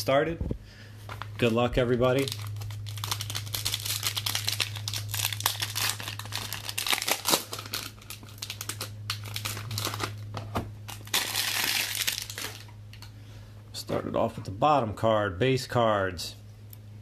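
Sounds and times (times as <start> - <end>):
low electrical hum: 0.0 - 17.0
plastic wrapping crinkling and tearing: 1.1 - 13.0.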